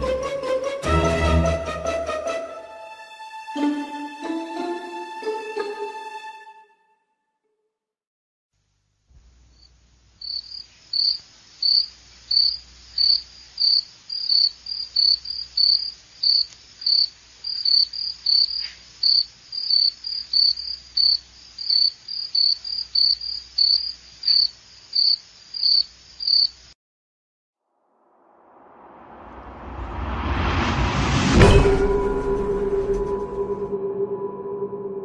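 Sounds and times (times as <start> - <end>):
cricket chirping: 9.2 - 26.8.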